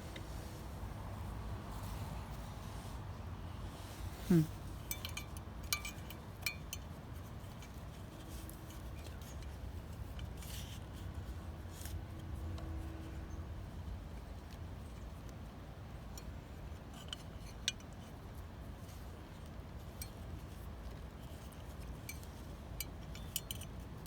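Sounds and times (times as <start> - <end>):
metallic clicks and clinks: 4.8 - 6.9.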